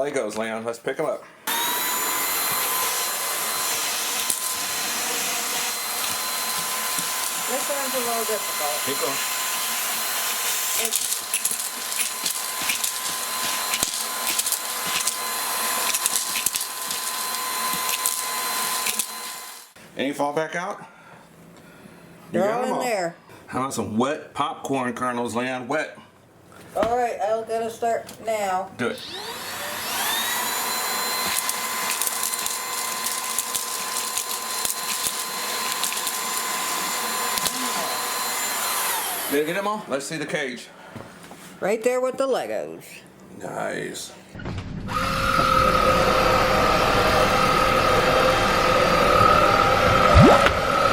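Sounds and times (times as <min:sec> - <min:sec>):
stick vacuum whining: 0:01.5 - 0:19.8, 0:28.8 - 0:39.8, 0:44.9 - 0:50.9
popcorn kernels rattling into vacuum: 0:10.5 - 0:19.3, 0:31.2 - 0:37.7.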